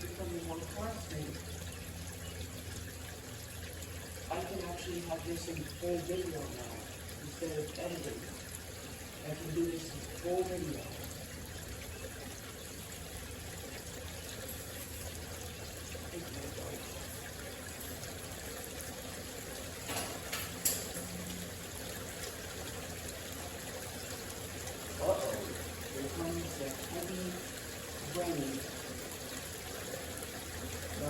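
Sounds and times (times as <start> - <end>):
steady rain: 16.1 - 31.0.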